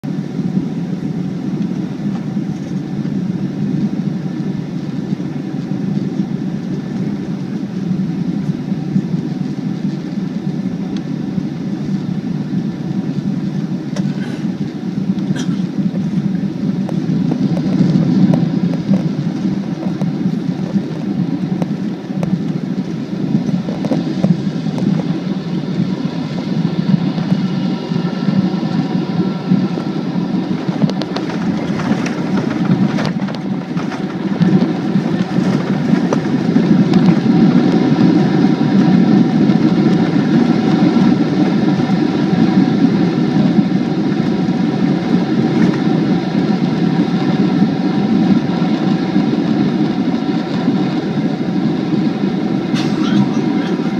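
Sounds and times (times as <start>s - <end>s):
jet engine rumble: 0.0s - 53.9s
whining tones: 52.4s - 53.9s.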